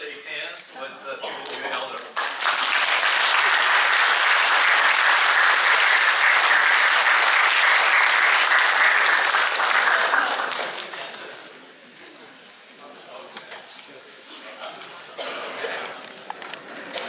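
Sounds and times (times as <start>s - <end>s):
congregation applauding: 2.0s - 11.4s.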